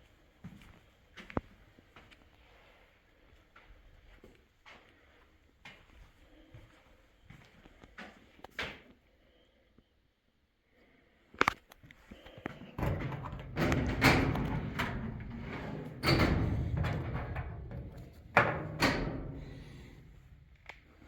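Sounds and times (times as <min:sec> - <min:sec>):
door rattling: 0:12.7 - 0:20.6
door banging: 0:12.8 - 0:20.6.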